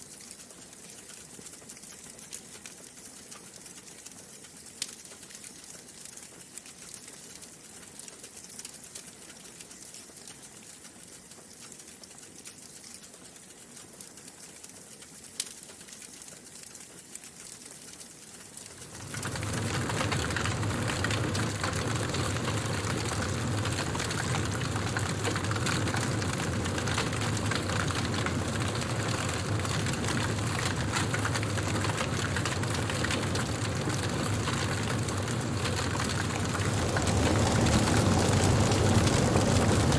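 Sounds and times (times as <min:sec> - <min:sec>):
wood fire crackling: 0:00.0 - 0:39.9
fire snap: 0:09.3 - 0:39.9
low rumble of fire: 0:17.8 - 0:39.9.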